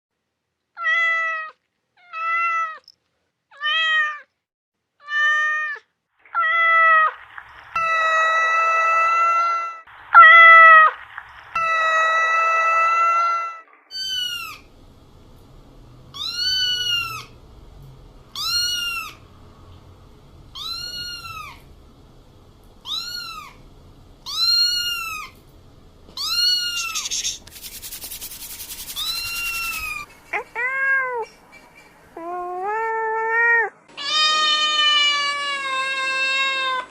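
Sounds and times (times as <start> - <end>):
cat meowing: 20.6 - 21.6, 22.8 - 23.6, 26.2 - 27.3, 32.2 - 36.9
hiss: 26.6 - 30.0.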